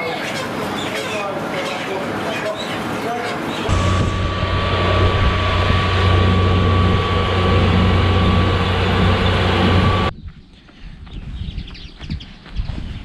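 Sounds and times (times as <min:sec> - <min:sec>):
tractor engine running: 0:03.7 - 0:10.1.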